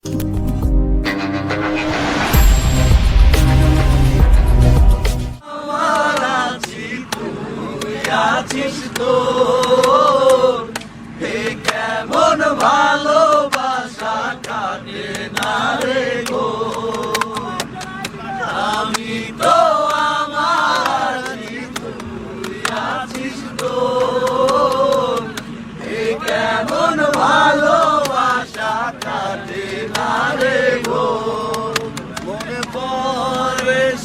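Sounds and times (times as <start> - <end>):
soft instrumental backing: 0.0 - 5.4.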